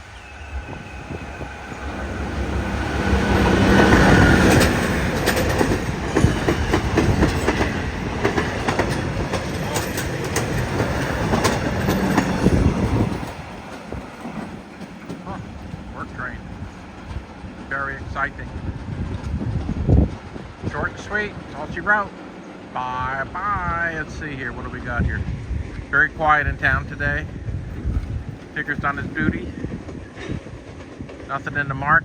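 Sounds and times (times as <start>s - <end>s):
train passing: 0.0s - 32.0s
wheels clacking over rail joints: 1.9s - 17.8s.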